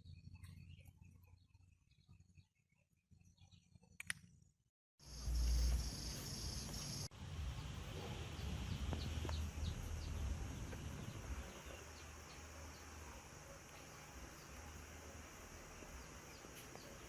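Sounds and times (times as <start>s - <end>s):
low rumble: 5.2s - 12.3s.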